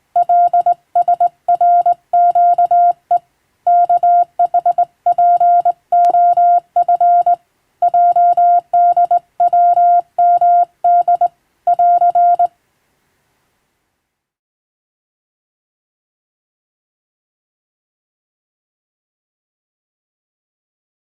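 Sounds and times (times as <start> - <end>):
morse code beeps: 0.2 - 3.0, 3.7 - 12.5.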